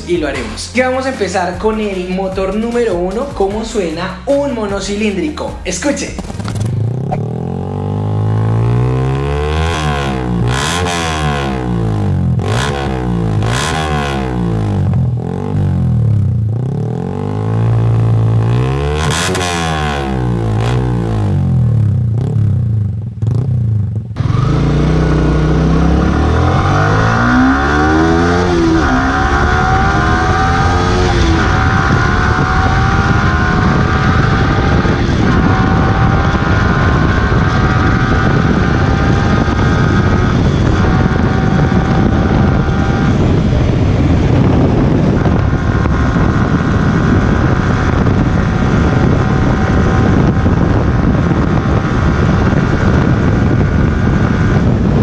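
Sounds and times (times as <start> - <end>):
motorcycle engine revving: 6.0 - 55.0.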